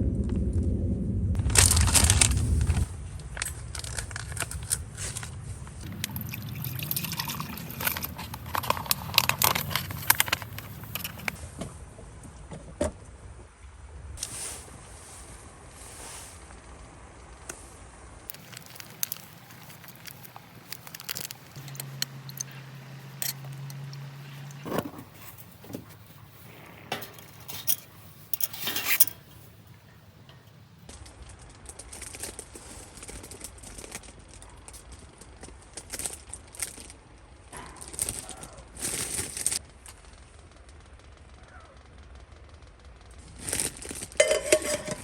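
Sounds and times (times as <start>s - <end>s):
rustling and crinkling: 1.4s - 12.3s, 14.2s - 40.7s, 43.2s - 45.0s
light clinks and taps: 18.3s - 30.6s.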